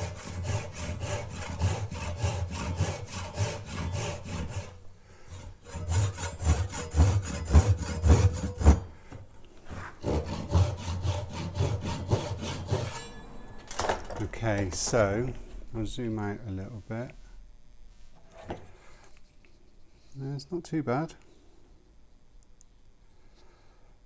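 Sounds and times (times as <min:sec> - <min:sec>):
hand saw cutting wood: 0:00.0 - 0:13.2.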